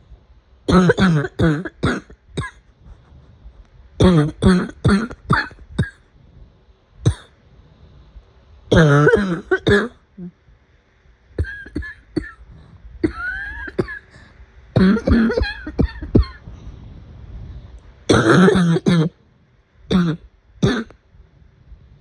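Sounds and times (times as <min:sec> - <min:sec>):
person coughing: 0:00.7 - 0:02.6, 0:04.0 - 0:06.0, 0:07.1 - 0:07.3, 0:08.7 - 0:10.0, 0:11.4 - 0:12.4, 0:13.0 - 0:14.2, 0:14.8 - 0:16.5, 0:18.1 - 0:19.2, 0:19.9 - 0:21.0.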